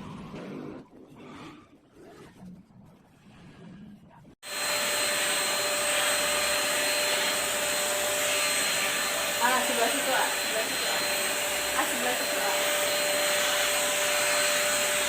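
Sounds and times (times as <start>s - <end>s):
handheld vacuum cleaner running: 4.4s - 15.0s.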